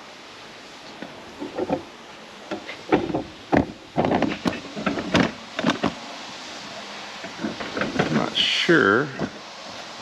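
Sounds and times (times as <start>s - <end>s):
knocks clicks and clatter: 1.0s - 1.9s, 2.5s - 6.0s, 7.2s - 8.4s, 9.1s - 9.4s.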